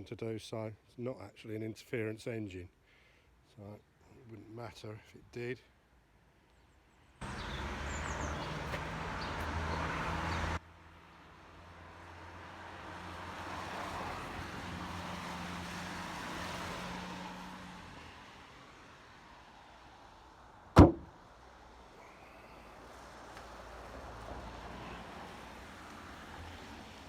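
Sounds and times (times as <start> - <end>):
passing vehicle: 7.2 - 20.2, 22.5 - 27.0
sharp bang: 20.8 - 21.1.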